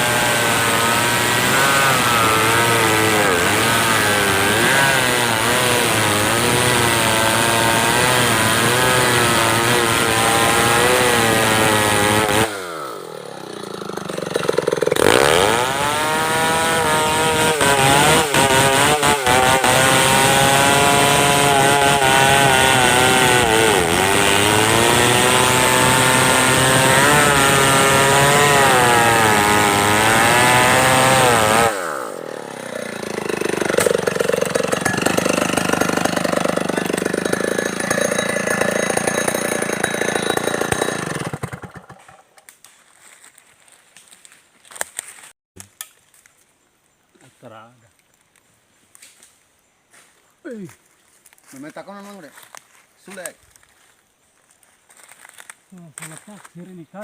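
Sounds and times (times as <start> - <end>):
chainsaw cutting wood: 0.0 - 43.2.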